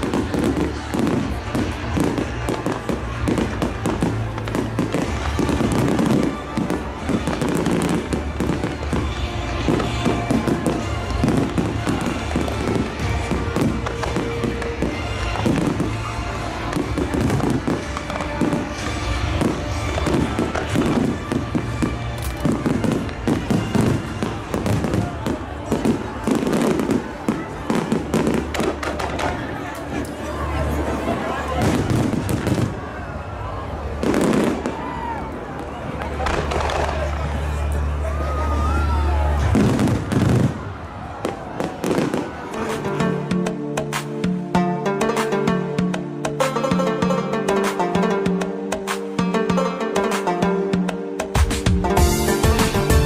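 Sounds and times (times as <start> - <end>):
fireworks bangs and crackles: 0.0 - 48.1
music playing: 0.0 - 53.0.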